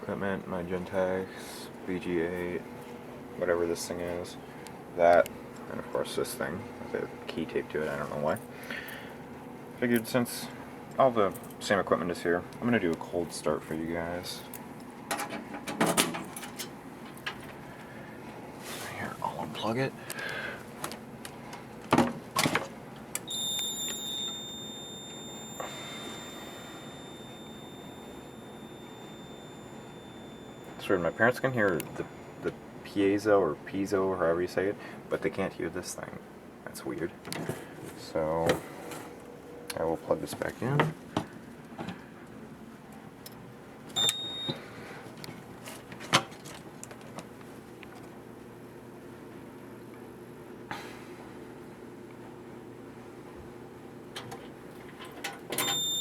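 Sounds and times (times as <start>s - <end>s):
high steady beep: 23.3s - 32.8s, 44.0s - 44.6s, 55.6s - 56.0s
high-pitched piezo tone: 23.3s - 32.9s, 44.0s - 44.6s, 55.6s - 56.0s.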